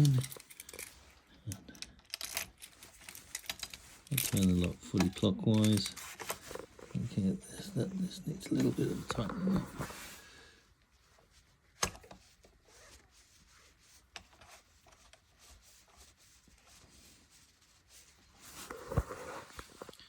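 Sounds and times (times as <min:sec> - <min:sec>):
handling small metal parts: 0:00.0 - 0:07.0.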